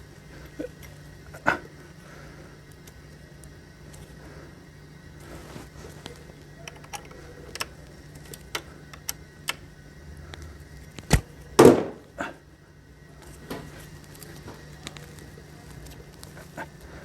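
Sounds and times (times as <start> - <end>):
sharp knock: 11.6 - 12.0
loud clunk: 11.6 - 12.1.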